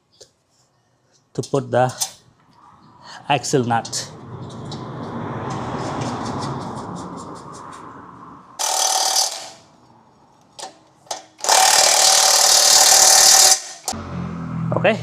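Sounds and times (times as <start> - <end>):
power tool tightening bursts: 8.6 - 9.6, 11.1 - 14.0
ratchet wrench clicking: 8.6 - 9.7, 10.6 - 14.0.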